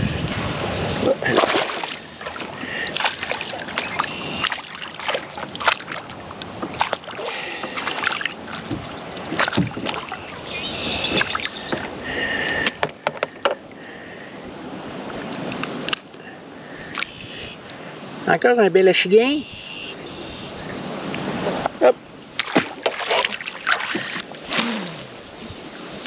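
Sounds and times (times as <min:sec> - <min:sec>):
water splashing: 0:00.0 - 0:12.8, 0:22.4 - 0:26.0
knocks against a kayak: 0:12.6 - 0:13.6.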